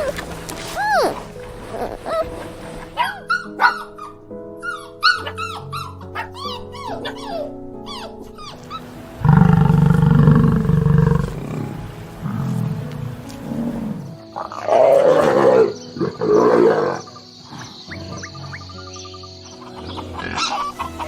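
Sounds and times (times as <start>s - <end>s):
background music: 0.0s - 21.0s
animal growling: 9.2s - 18.2s
high chirping calls: 15.6s - 21.0s.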